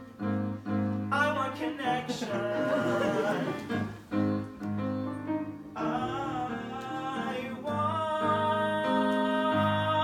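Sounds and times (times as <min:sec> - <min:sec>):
person singing: 0:01.1 - 0:03.9, 0:05.8 - 0:10.0
keyboard chords: 0:02.4 - 0:10.0.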